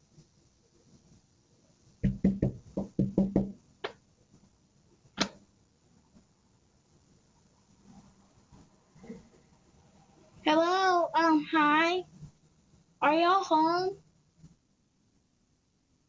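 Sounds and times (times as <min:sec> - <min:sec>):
knocking on a door: 0:02.0 - 0:03.6.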